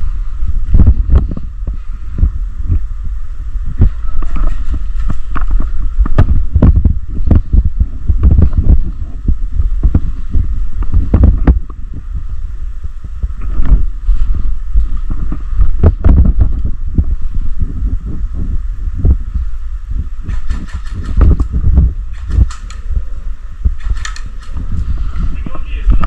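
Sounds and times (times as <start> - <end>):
loud rumble: 0.0 - 26.0
wind buffeting microphone: 0.0 - 26.0.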